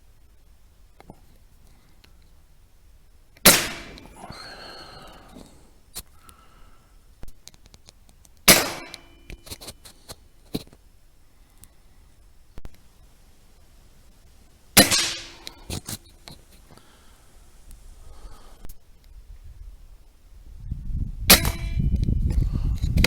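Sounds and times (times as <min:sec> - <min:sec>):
rifle shots: 0:03.4 - 0:04.2, 0:08.5 - 0:09.2, 0:14.8 - 0:15.8, 0:21.3 - 0:21.7.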